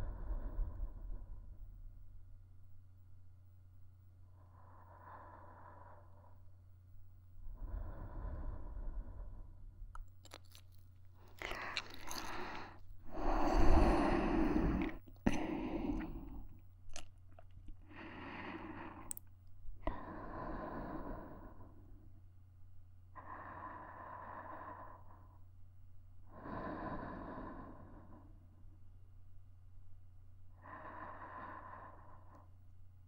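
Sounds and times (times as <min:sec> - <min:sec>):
slow soft breathing: 0:00.0 - 0:01.9, 0:04.2 - 0:22.2, 0:23.1 - 0:25.5, 0:26.2 - 0:28.8, 0:30.5 - 0:32.7.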